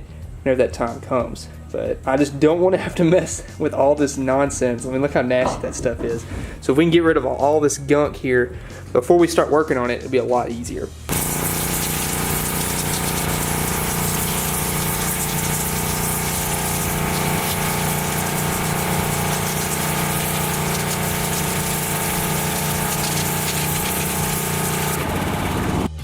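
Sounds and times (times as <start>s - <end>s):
pressure washer spraying: 11.1s - 26.0s.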